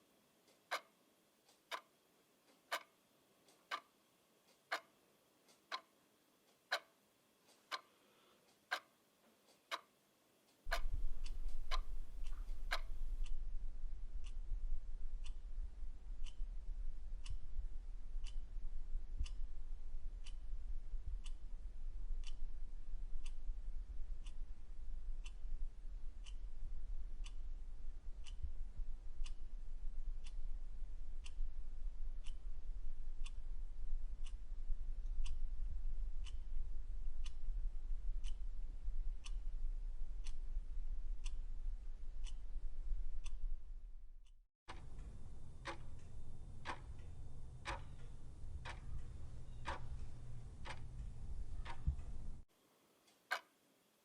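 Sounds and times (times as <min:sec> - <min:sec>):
clock ticking: 0:00.4 - 0:10.0, 0:10.7 - 0:13.5, 0:14.2 - 0:21.6, 0:22.2 - 0:43.6, 0:44.2 - 0:52.4
steady low hum: 0:10.7 - 0:52.5.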